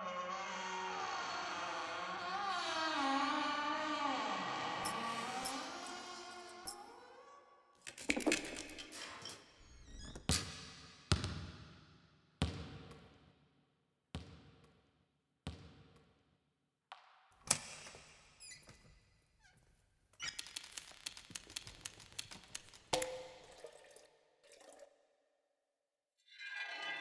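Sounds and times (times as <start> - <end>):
rattling run of small clicks: 20.2 - 22.9.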